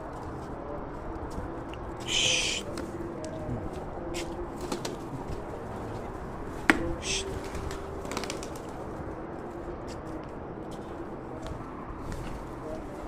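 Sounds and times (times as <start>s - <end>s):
pigeons cooing: 1.7s - 8.8s.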